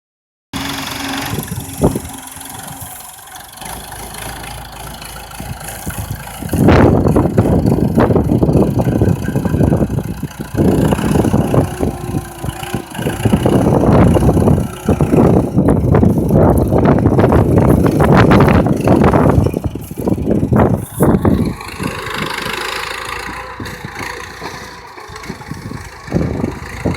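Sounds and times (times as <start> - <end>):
tractor diesel engine running: 0.6 - 26.9.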